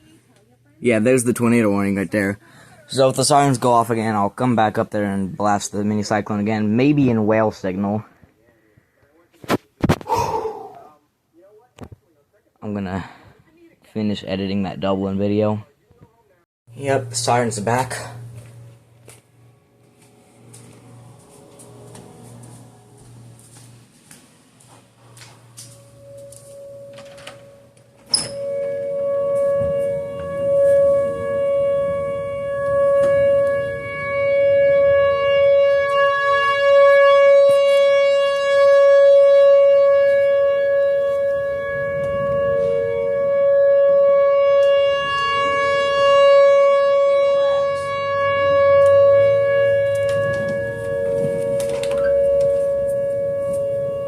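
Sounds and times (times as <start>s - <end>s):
two-note siren: 16.7s - 54.0s.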